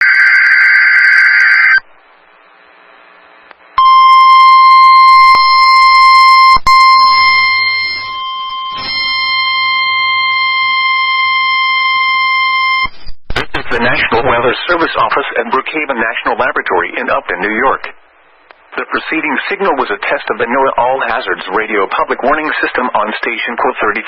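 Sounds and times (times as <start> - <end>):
piercing warning alarm tone: 0.0 - 1.8, 3.8 - 12.9.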